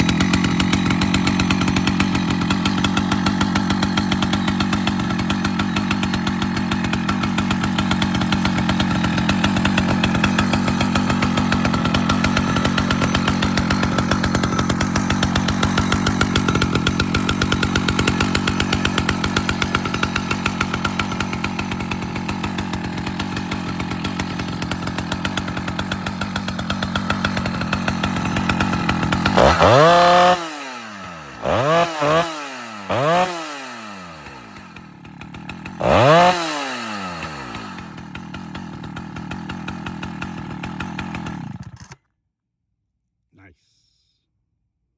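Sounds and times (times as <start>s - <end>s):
chainsaw engine running: 0.0s - 42.0s.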